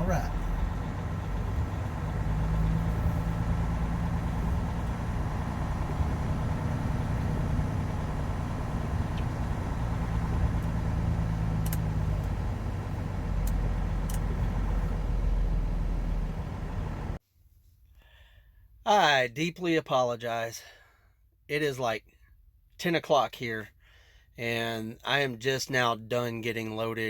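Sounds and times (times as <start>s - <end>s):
diesel engine running: 0.0s - 17.2s
faint clicks: 8.0s - 15.0s.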